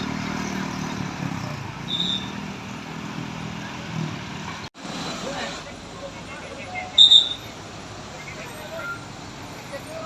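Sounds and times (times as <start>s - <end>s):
diesel bus engine passing: 0.0s - 6.0s
road traffic: 0.0s - 10.0s.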